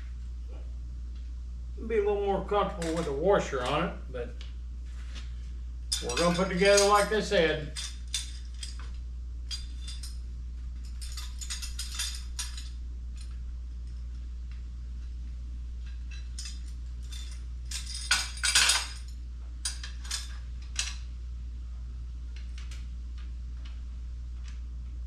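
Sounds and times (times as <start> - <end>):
steady low hum: 0.0 - 25.0
metal parts clinking: 2.8 - 3.1, 5.9 - 8.9, 9.5 - 10.2, 10.8 - 13.4, 15.8 - 21.0.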